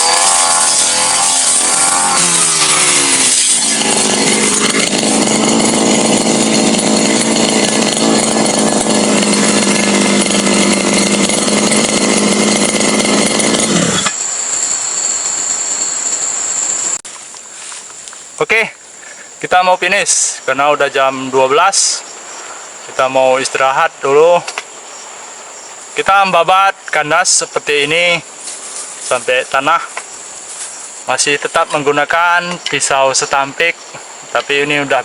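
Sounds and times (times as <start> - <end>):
brush cutter engine revving: 0.0 - 17.0.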